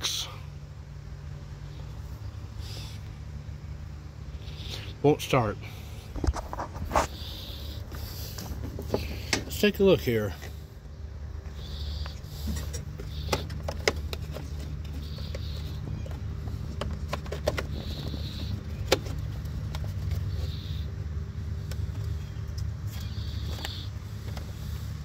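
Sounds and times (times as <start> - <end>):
steady low hum: 0.0 - 25.0
hands clicking on engine: 12.0 - 20.3.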